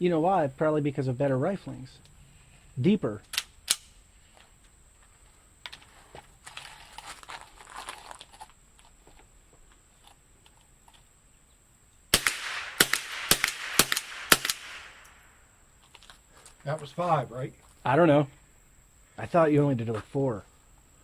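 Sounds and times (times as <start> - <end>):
faint handling noise: 4.1 - 11.2
rifle shots: 12.1 - 15.4.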